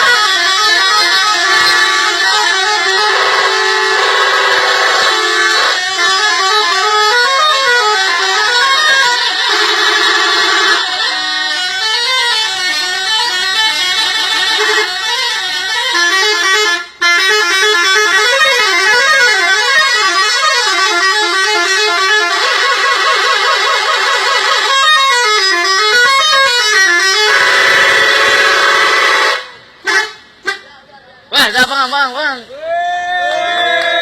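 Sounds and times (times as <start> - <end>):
musical bus horn warbling: 0.0 - 30.7.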